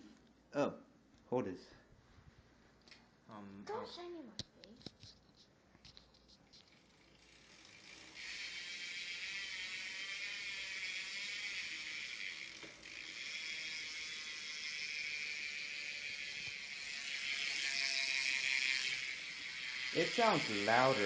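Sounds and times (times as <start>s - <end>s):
bicycle hub freewheel ratcheting: 5.9s - 21.0s.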